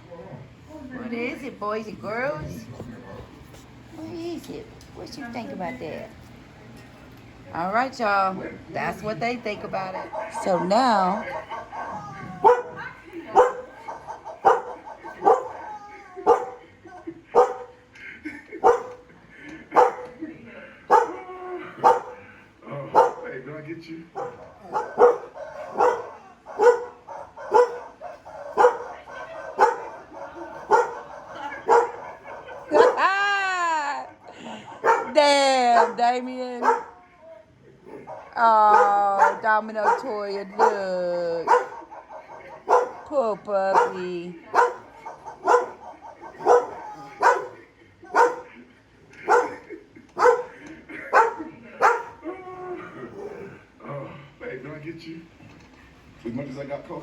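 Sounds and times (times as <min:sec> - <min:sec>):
dog barking: 0:09.9 - 0:16.7, 0:17.3 - 0:17.8, 0:18.6 - 0:19.1, 0:19.7 - 0:20.2, 0:20.9 - 0:22.3, 0:22.9 - 0:23.4, 0:24.1 - 0:33.1, 0:34.7 - 0:37.0, 0:37.9 - 0:48.6, 0:49.2 - 0:52.2
dog drawn-out cry: 0:10.1 - 0:16.6, 0:20.9 - 0:22.2, 0:24.2 - 0:33.2, 0:34.8 - 0:37.1, 0:38.0 - 0:43.1, 0:43.8 - 0:48.5, 0:49.2 - 0:49.6, 0:50.2 - 0:52.3.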